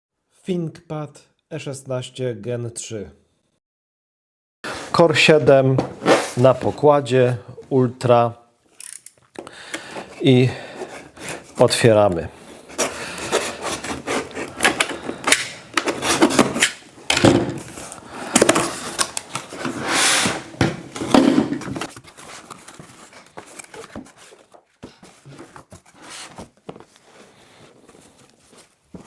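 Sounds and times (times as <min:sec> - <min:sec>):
packaging rustling: 0:08.8 - 0:29.0
cardboard box being opened: 0:17.6 - 0:29.0.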